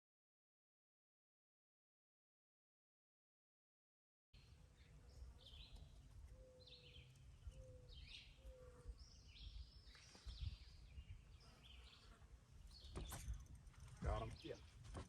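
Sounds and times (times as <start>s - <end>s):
birds chirping faintly: 4.4s - 15.0s.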